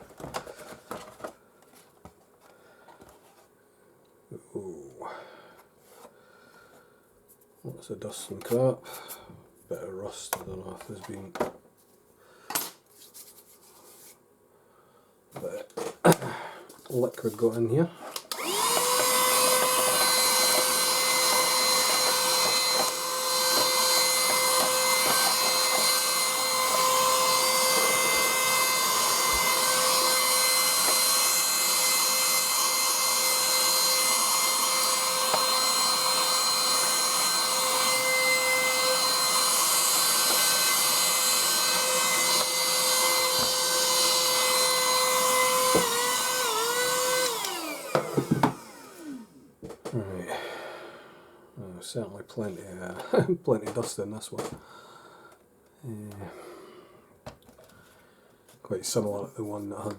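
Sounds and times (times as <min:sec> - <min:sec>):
small vacuum cleaner whining: 0:18.1 - 0:49.6.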